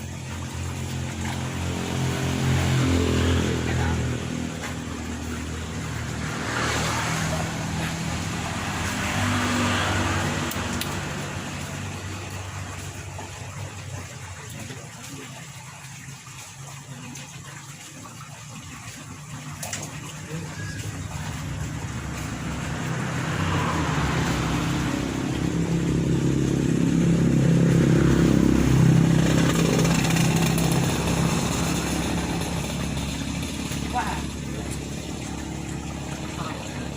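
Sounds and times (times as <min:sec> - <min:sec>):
road noise of passing vehicles: 0:00.0 - 0:36.9
vehicle engine humming: 0:00.0 - 0:36.9
small engine humming: 0:20.1 - 0:36.9.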